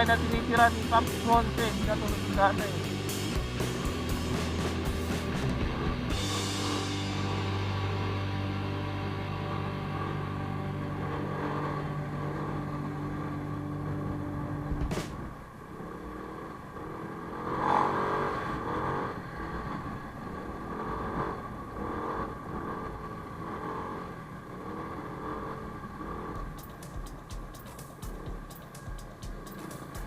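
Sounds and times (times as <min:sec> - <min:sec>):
scooter engine idling: 0:25.9 - 0:30.0.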